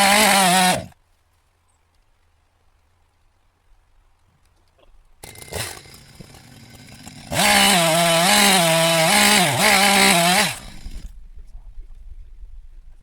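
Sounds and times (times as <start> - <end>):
two-stroke chainsaw revving: 0.0 - 1.0, 5.2 - 11.1.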